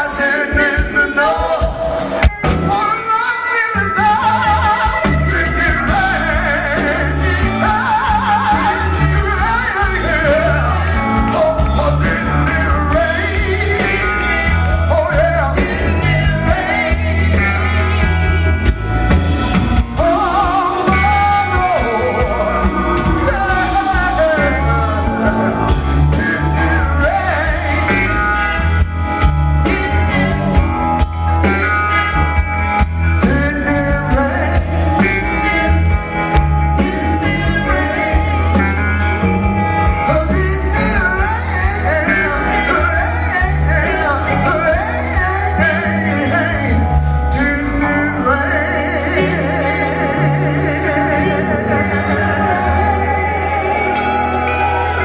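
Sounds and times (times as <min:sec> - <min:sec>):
blues-rock band playing: 0:00.0 - 0:55.0
person singing: 0:00.0 - 0:55.0.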